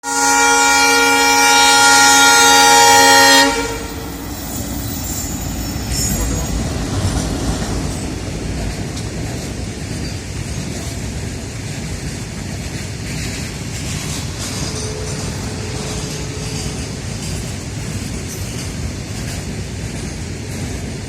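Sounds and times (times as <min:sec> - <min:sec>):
locomotive horn blast: 0:00.0 - 0:04.4
freight train rumble: 0:00.0 - 0:21.0.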